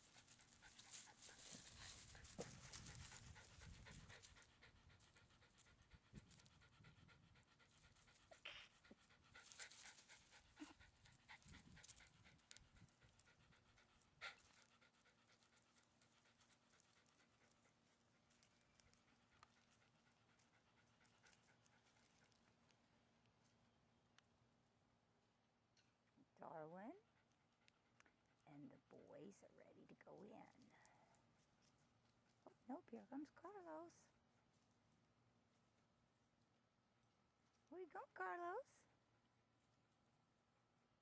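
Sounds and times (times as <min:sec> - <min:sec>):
dog panting: 0:00.0 - 0:22.7.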